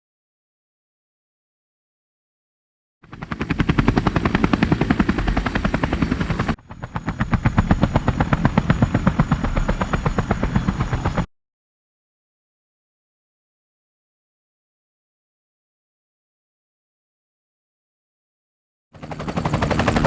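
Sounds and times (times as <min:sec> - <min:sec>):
helicopter rotor blades chopping: 0:03.0 - 0:11.3, 0:19.0 - 0:20.0.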